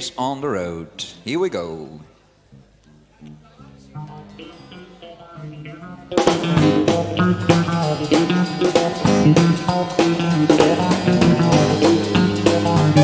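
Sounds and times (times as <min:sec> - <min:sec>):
electric guitars: 0:02.7 - 0:13.0
pedal steel guitar: 0:03.2 - 0:13.0
bass guitar: 0:03.3 - 0:13.0
drum kit playing driving beat: 0:06.2 - 0:13.0
piano: 0:06.2 - 0:13.0.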